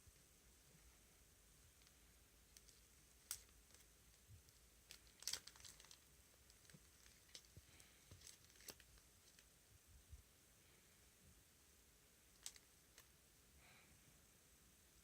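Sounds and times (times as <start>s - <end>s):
crinkling rustle: 1.8s - 9.5s, 12.3s - 13.1s.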